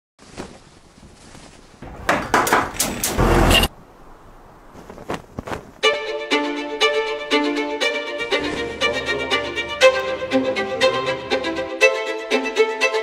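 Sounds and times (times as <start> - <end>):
knocks and bangs: 1.8 - 3.7
sharp clicks: 2.2 - 3.7
violin music: 5.8 - 13.0.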